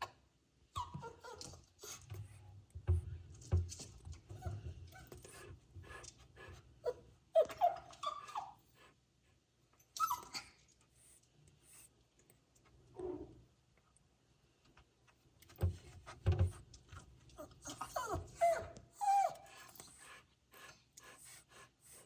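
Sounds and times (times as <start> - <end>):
rustling and shuffling: 1.5 - 6.8.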